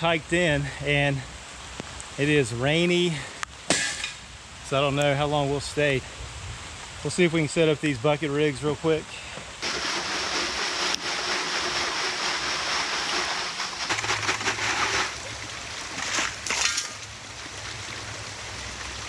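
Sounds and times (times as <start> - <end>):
creek water rushing: 0.0 - 19.0
water splashes: 9.6 - 19.0.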